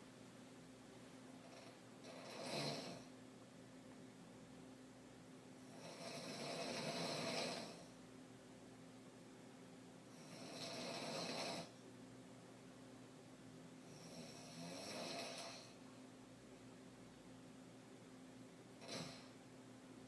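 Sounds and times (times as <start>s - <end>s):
woman snoring: 1.4s - 3.1s, 5.7s - 7.9s, 10.1s - 11.8s, 13.9s - 15.8s, 18.8s - 19.4s.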